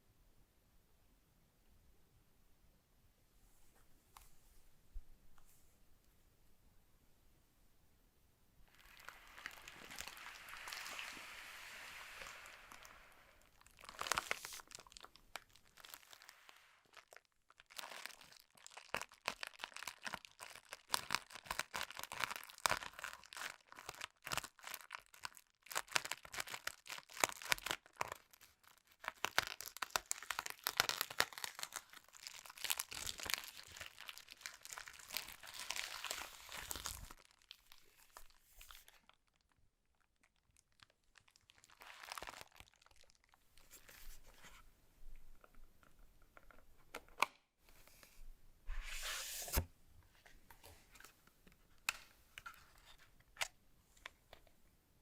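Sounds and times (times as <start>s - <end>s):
packaging crinkling and tearing: 8.7s - 39.5s, 40.1s - 44.1s.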